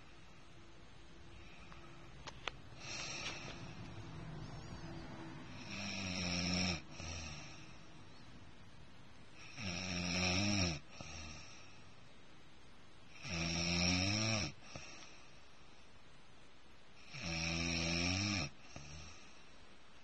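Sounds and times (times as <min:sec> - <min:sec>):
rasping snoring: 0:02.8 - 0:07.8, 0:09.4 - 0:11.6, 0:13.2 - 0:15.0, 0:17.0 - 0:19.2.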